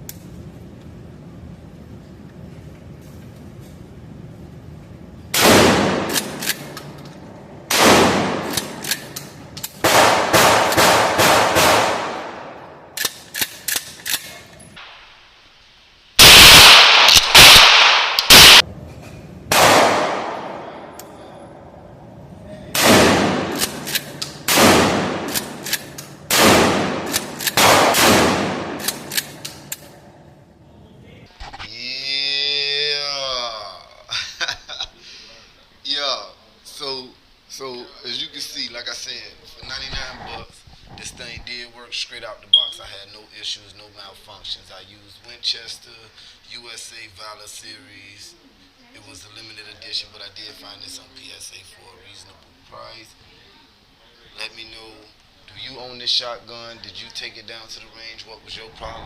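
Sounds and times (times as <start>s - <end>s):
shotgun blasts: 5.4s - 6.7s, 7.7s - 8.9s, 9.8s - 12.9s, 16.2s - 18.6s, 19.5s - 20.9s, 22.7s - 29.4s.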